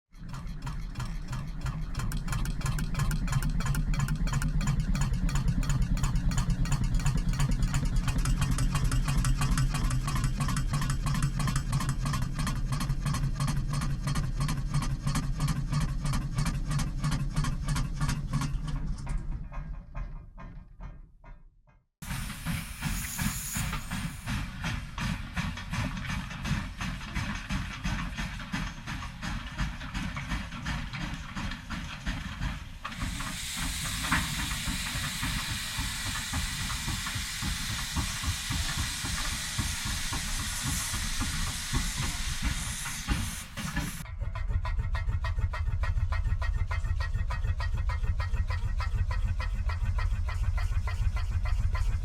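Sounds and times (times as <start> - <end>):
steam locomotive chuffing: 0.1 - 20.8, 22.0 - 52.0
steam hiss: 22.0 - 44.0.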